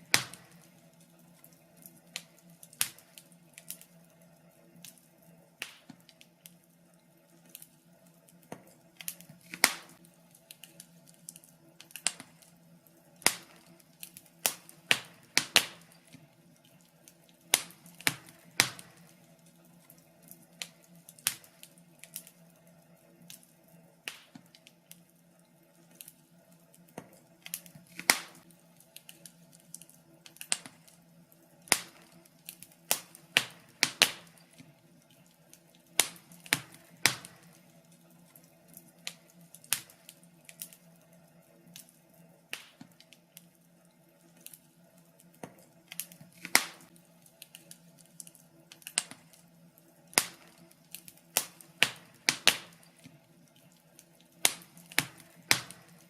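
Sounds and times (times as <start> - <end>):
faint steady hum: 0.0 - 56.0
wood fire crackling: 0.0 - 56.0.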